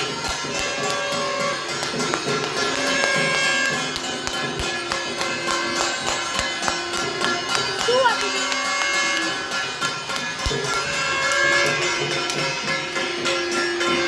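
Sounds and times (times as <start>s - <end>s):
metal pots and pans banging: 0.0s - 14.0s.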